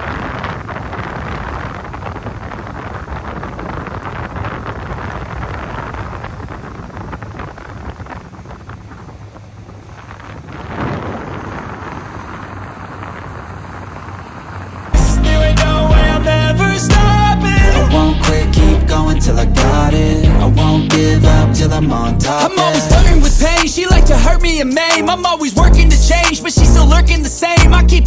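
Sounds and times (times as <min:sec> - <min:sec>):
wind buffeting microphone: 0:00.0 - 0:25.3.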